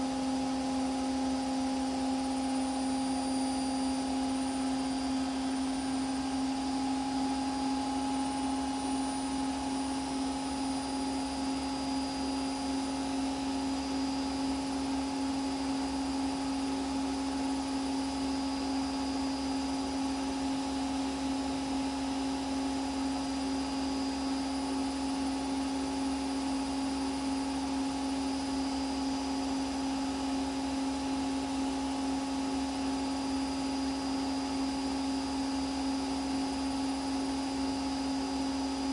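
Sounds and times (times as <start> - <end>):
washing machine running: 0.0 - 11.6.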